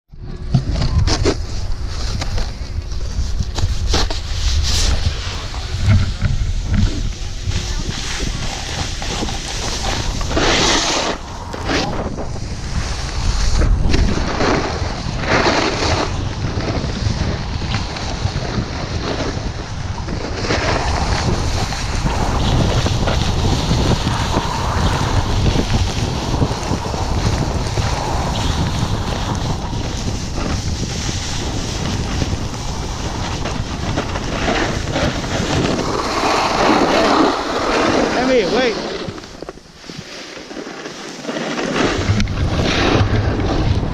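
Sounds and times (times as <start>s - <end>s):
wind rushing over microphone: 0.1s - 43.9s
snowboard scraping across snow: 0.9s - 43.9s.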